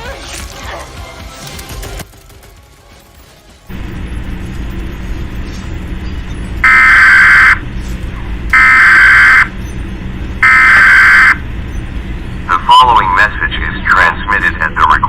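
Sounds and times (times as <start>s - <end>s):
harsh buzzing data bursts: 3.7s - 7.8s, 8.5s - 15.0s
low noisy hum: 3.7s - 15.0s.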